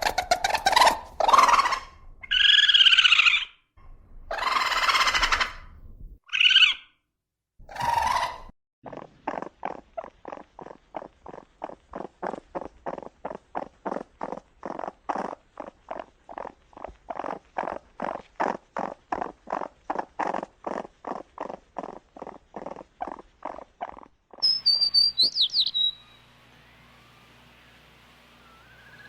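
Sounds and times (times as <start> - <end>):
animal harsh calls: 0.0 - 3.6, 4.3 - 6.9, 7.7 - 26.2
high gliding chirps and whistles: 24.4 - 29.0.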